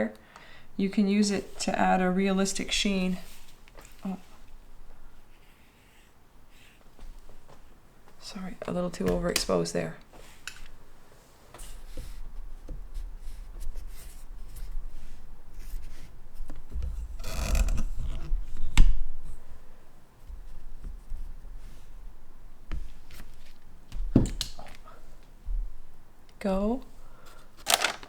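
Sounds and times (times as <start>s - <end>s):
paper rustle: 27.6s - 28.0s.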